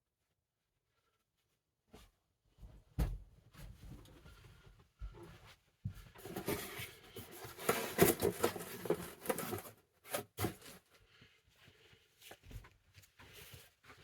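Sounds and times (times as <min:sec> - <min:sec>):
packaging rustling and crinkling: 0:06.2 - 0:10.9.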